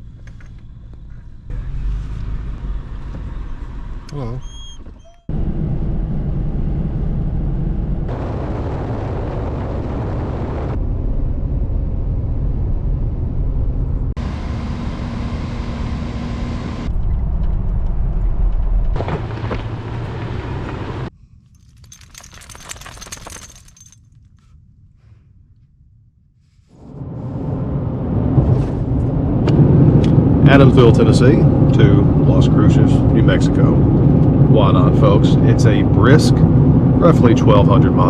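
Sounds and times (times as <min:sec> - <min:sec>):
vehicle road rumble: 0:00.0 - 0:25.4, 0:26.4 - 0:38.0.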